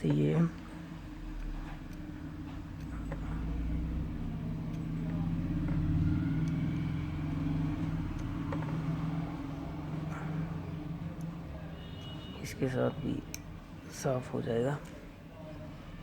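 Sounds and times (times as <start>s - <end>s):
low engine hum: 0.0s - 11.8s.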